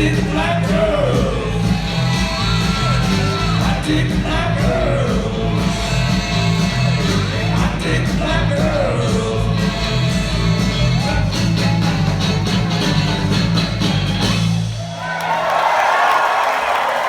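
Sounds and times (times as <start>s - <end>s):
live rock band playing: 0.0s - 14.8s
crowd cheering and applauding: 14.3s - 17.0s.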